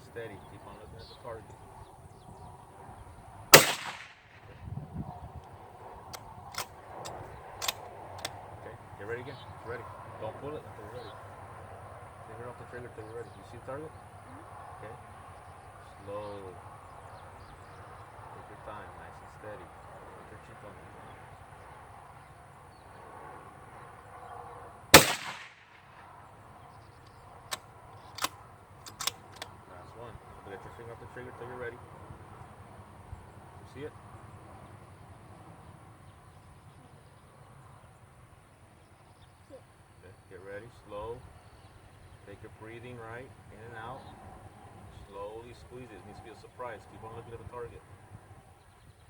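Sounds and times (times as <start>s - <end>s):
rifle shot with echo: 3.5s - 4.6s, 24.9s - 26.0s
rifle bolt clicking: 3.6s - 4.1s, 6.2s - 8.4s, 25.0s - 25.7s, 28.0s - 29.5s
light click: 28.2s - 29.5s.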